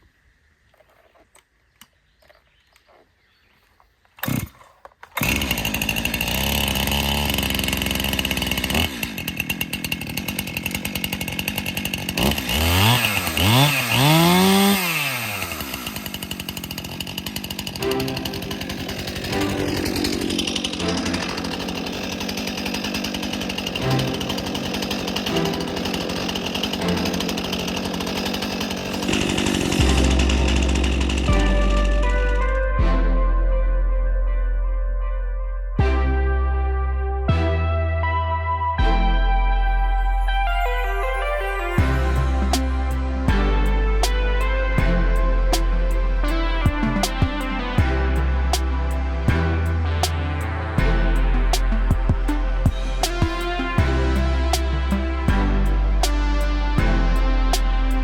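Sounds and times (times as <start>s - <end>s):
chainsaw starting and revving: 4.2s - 32.6s, 40.2s - 58.0s.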